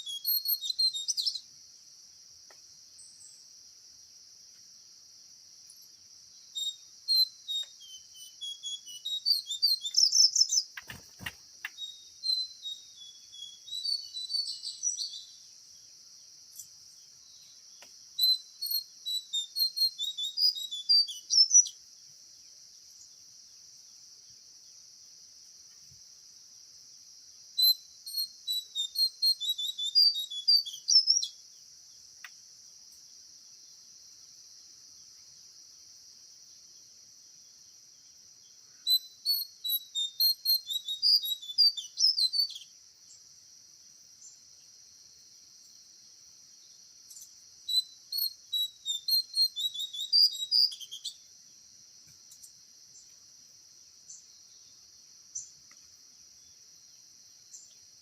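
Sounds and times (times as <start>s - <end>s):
songbird chirping and whistling: 0.0s - 1.5s, 5.7s - 15.6s, 16.5s - 21.8s, 27.6s - 31.4s, 38.8s - 43.2s, 47.1s - 51.3s
insects buzzing: 0.0s - 58.0s.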